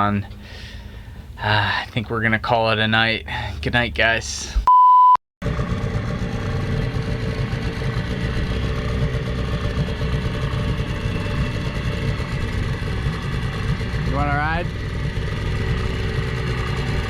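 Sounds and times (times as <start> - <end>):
engine rumble: 0.0 - 4.7, 5.4 - 17.0.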